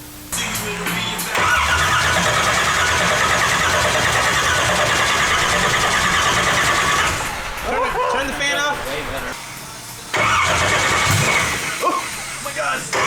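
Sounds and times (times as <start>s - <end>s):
car engine running loud: 0.7s - 7.8s, 10.2s - 13.0s.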